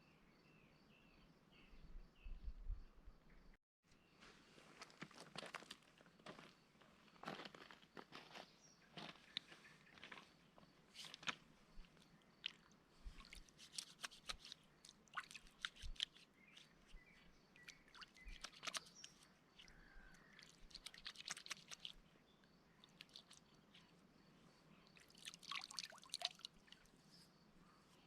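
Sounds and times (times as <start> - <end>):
faint clicks and crunches: 9.0 - 14.9.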